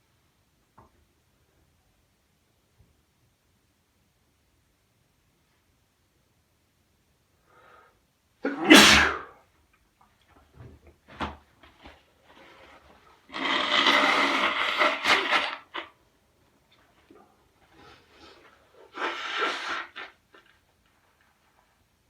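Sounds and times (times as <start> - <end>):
man sneezing: 8.4 - 9.4
man blowing his nose: 8.5 - 9.4, 13.3 - 15.9, 17.8 - 20.4.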